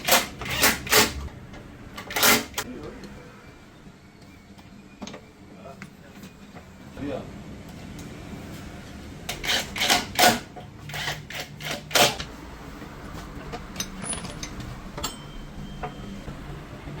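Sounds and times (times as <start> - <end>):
metal tools clicking and clinking: 13.4 - 16.3.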